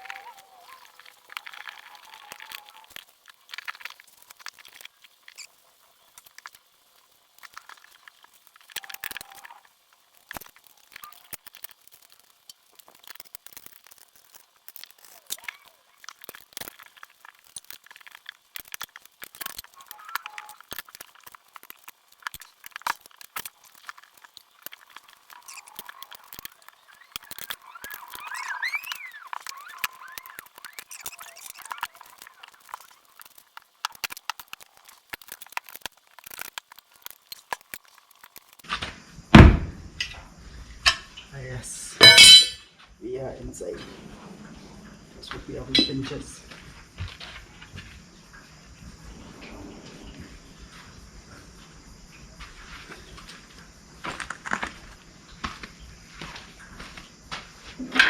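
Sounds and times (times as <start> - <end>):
rubbery tyre squeak: 26.8 - 32.0.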